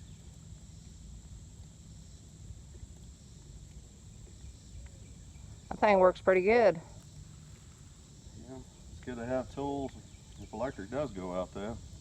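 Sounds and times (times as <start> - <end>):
crickets droning: 0.0 - 12.0
faint ticks: 2.7 - 5.2, 9.7 - 10.5.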